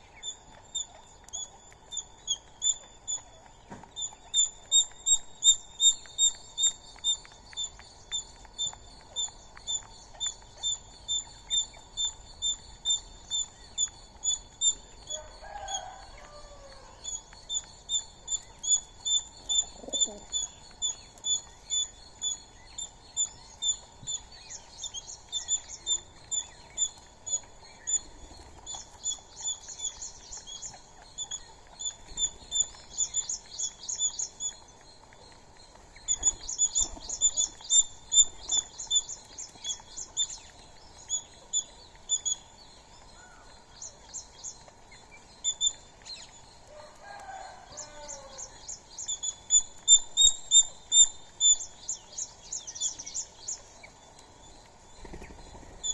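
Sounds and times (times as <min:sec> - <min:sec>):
birds chirping: 0:00.0 - 0:55.9.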